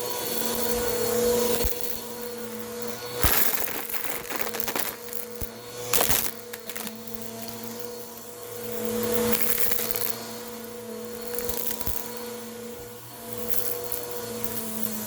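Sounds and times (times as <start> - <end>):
crackling and clicking: 3.0 - 8.2, 9.2 - 10.6.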